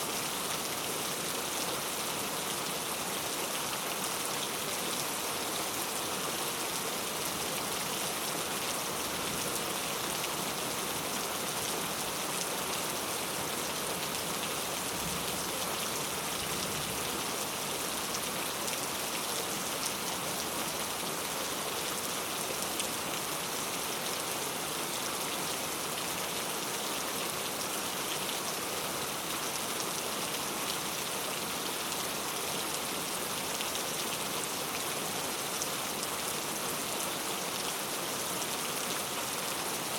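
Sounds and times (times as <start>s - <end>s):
heavy rain falling: 0.1s - 28.3s.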